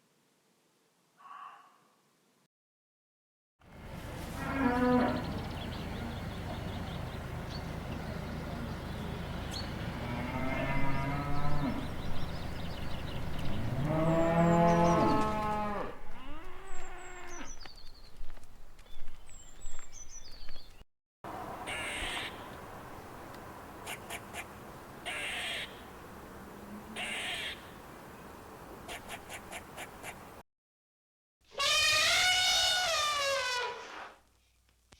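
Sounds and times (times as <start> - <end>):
cow mooing: 4.4 - 5.3, 10.0 - 12.0, 13.6 - 17.4.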